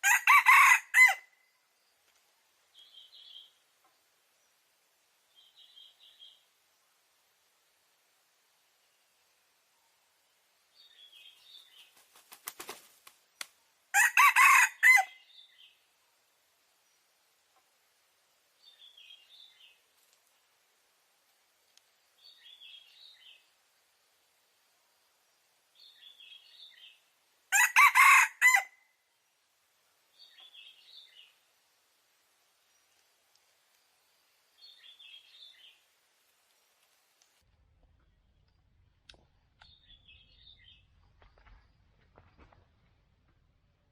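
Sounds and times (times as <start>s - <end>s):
rooster crowing: 0.0s - 1.3s, 13.9s - 15.2s, 27.5s - 28.8s
wings flapping: 11.8s - 13.2s.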